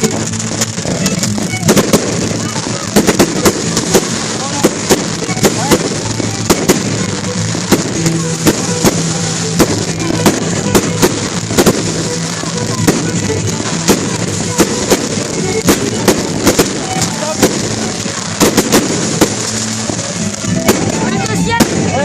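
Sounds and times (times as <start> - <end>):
fireworks cracking and banging: 0.0 - 22.0
music playing: 0.0 - 22.0.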